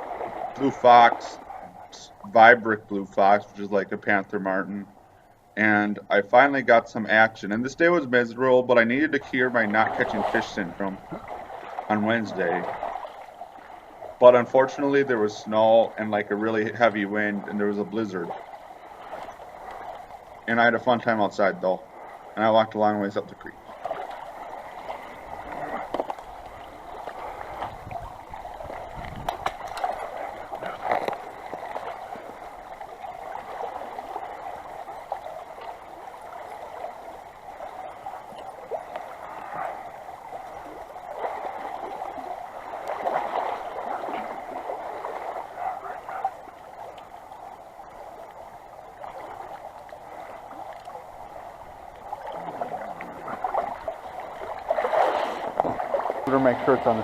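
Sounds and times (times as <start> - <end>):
creek babbling: 0.0 - 57.0
wind rumble on microphone: 25.2 - 31.2.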